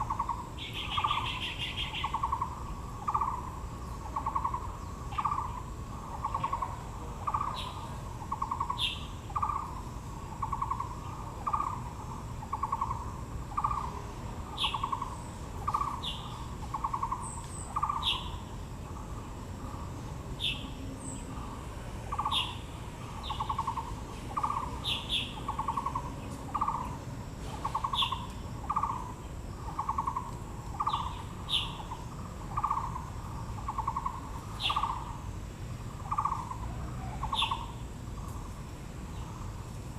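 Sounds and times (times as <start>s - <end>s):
high bird chirps: 33.6s - 35.1s.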